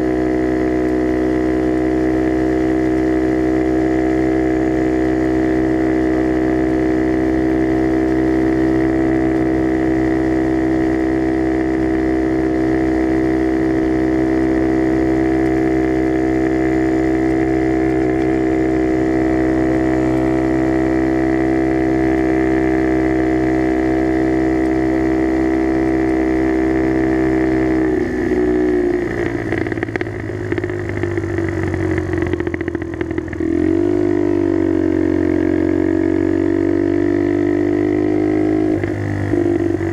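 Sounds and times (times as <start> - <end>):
motorbike engine running: 0.0 - 39.9
exhaust crackles and pops: 13.5 - 23.5, 24.4 - 34.8.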